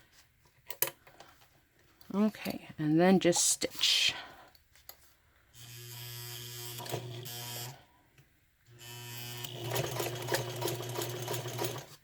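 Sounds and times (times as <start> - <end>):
sewing machine motor hum: 5.6 - 7.9, 8.7 - 12.0.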